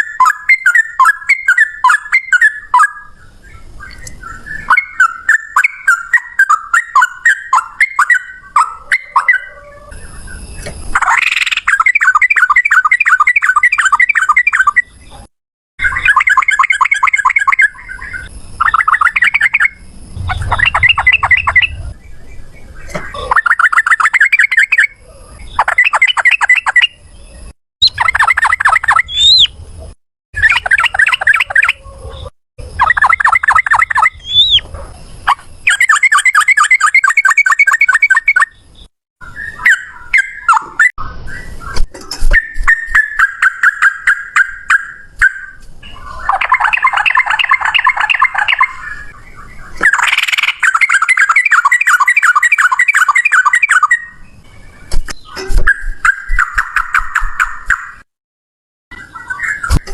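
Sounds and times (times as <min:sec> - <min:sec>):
bird singing chattering trills: 0:15.8 - 0:29.6, 0:30.4 - 0:34.6, 0:35.2 - 0:58.0.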